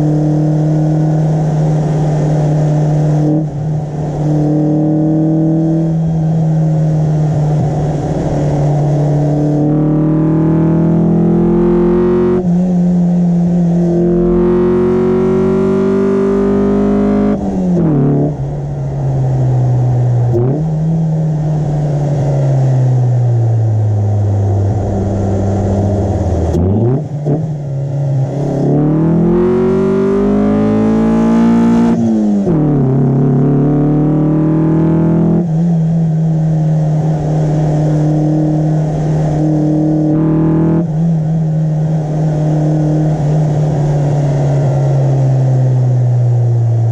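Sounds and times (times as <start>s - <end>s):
car engine revving while driving: 0.0s - 46.9s.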